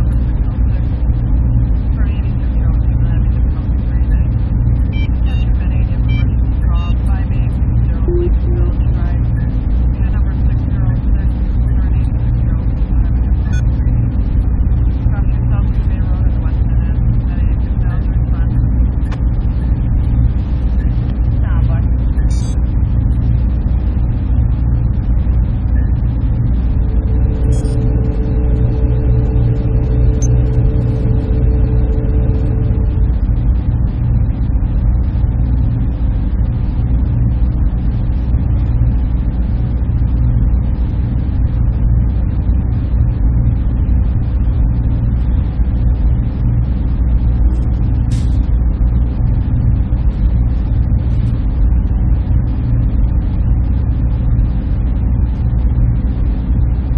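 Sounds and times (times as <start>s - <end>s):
cooling fans humming: 0.0s - 56.9s
faint steady tone: 7.9s - 9.2s, 25.0s - 34.5s.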